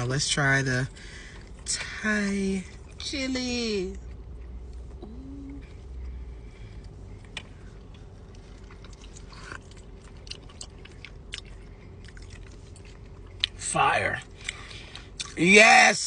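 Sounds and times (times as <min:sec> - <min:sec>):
biting and chewing chicken wing: 0:07.2 - 0:13.6.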